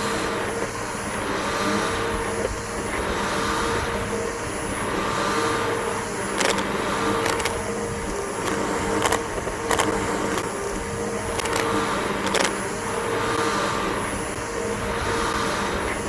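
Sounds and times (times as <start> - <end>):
vacuum cleaner motor whine: 0.0 - 16.0
debris clicking in vacuum: 6.4 - 10.8, 11.4 - 12.6.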